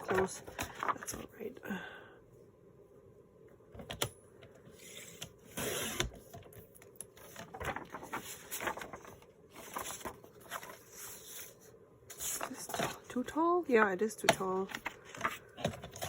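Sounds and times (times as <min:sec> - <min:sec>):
paper rustling and scraping: 0:07.2 - 0:13.2.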